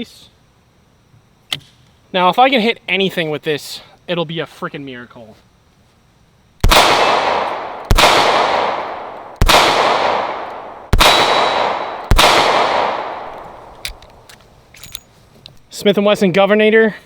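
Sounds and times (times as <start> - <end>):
revolver shots echoing: 6.6 - 13.8.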